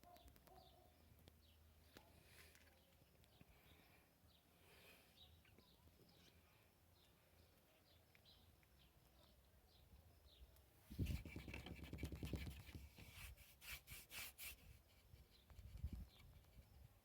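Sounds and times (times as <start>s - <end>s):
faint bird chirps: 0.0s - 12.7s
short scratches: 10.9s - 15.0s
rubbing and rustling: 10.9s - 16.8s.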